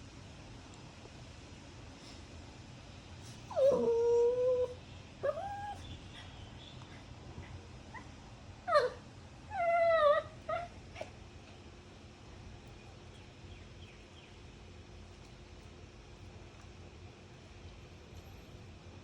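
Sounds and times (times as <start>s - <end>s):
dog whining: 3.4s - 6.3s, 7.4s - 11.2s.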